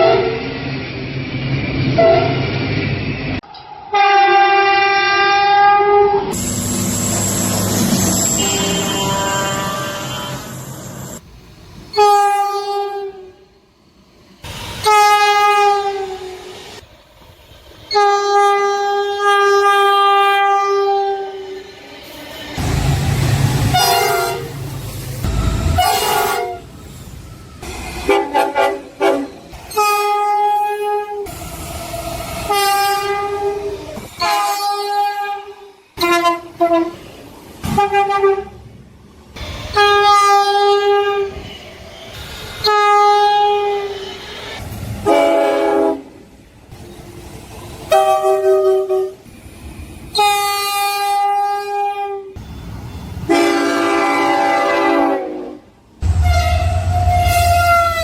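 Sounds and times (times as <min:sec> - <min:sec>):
passing train rumble: 0:00.0 - 0:58.0
train horn blasts: 0:03.9 - 0:06.4, 0:08.0 - 0:11.0, 0:11.9 - 0:13.4, 0:14.8 - 0:16.4, 0:17.9 - 0:21.4, 0:23.6 - 0:24.6, 0:25.6 - 0:26.7, 0:28.1 - 0:31.3, 0:32.4 - 0:37.0, 0:37.6 - 0:38.6, 0:39.7 - 0:41.4, 0:42.6 - 0:44.0, 0:45.0 - 0:46.2, 0:47.9 - 0:49.2, 0:53.2 - 0:58.0.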